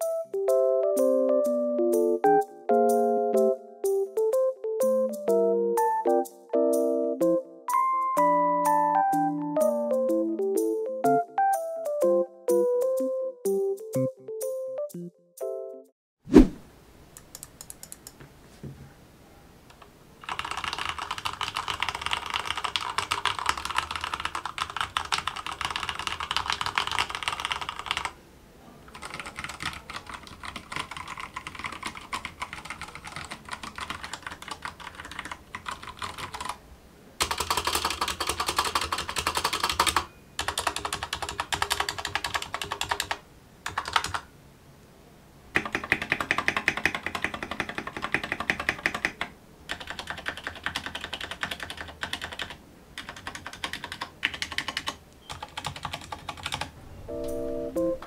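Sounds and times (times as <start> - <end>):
rapid typing on mechanical keyboard: 20.2 - 28.2, 28.9 - 36.6, 37.2 - 44.3, 45.6 - 56.7.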